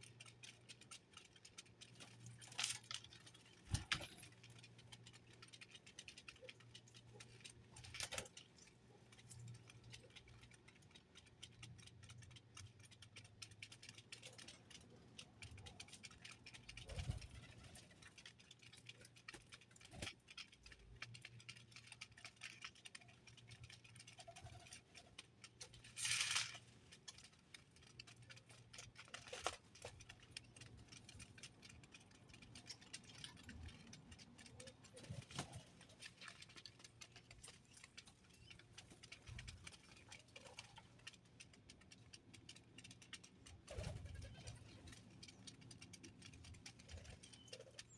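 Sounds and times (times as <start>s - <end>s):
birds pecking and hopping: 0.0s - 47.9s
rustle: 25.8s - 26.7s.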